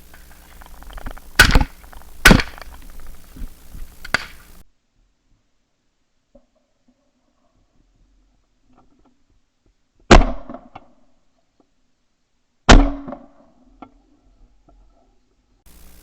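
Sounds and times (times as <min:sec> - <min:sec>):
faint clicks: 0:00.0 - 0:04.6
shotgun shots: 0:00.0 - 0:04.6.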